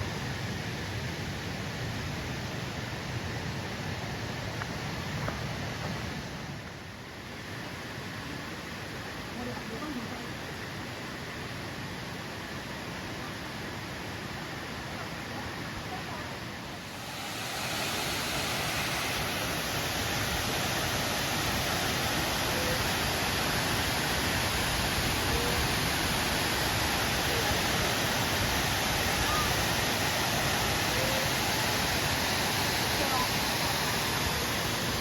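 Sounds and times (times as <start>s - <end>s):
waterfall rushing water: 7.2s - 35.0s.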